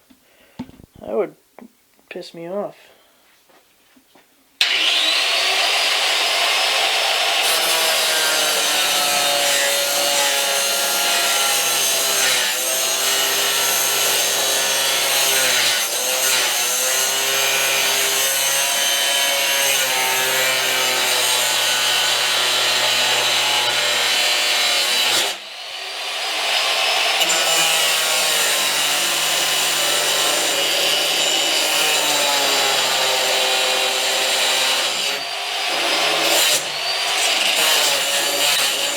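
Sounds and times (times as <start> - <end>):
angle grinder grinding steel: 4.6 - 38.9.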